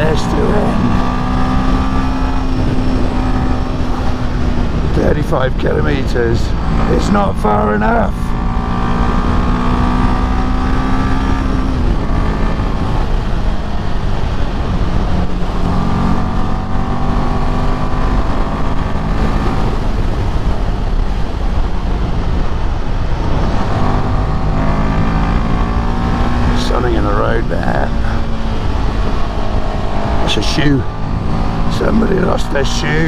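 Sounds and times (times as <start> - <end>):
wind rumble on microphone: 0.0 - 6.9, 8.2 - 26.6
motorcycle engine running: 0.0 - 33.0.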